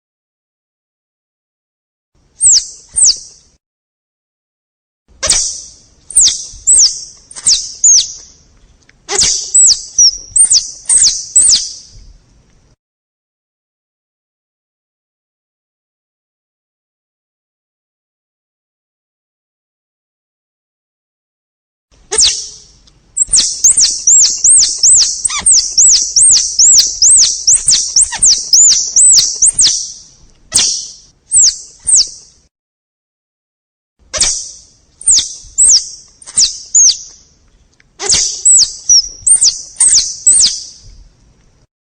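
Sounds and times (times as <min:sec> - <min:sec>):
squirrel squeaky calls: 0:02.4 - 0:03.4, 0:05.2 - 0:08.3, 0:09.1 - 0:12.0, 0:22.1 - 0:32.3, 0:34.1 - 0:37.2, 0:38.0 - 0:40.9.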